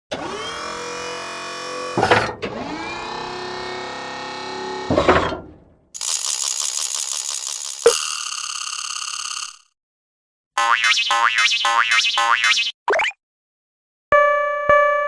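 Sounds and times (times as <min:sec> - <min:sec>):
fast-pulsing electronic alarm tone: 0:06.0 - 0:09.7, 0:10.6 - 0:12.8
electronic tones dipping in pitch: 0:10.6 - 0:13.2.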